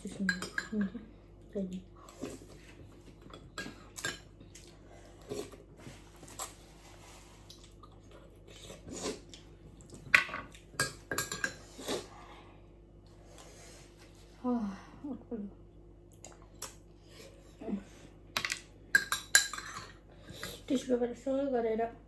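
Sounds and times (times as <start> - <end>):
cutlery clinking against dishes: 10.2 - 11.6, 18.4 - 20.0.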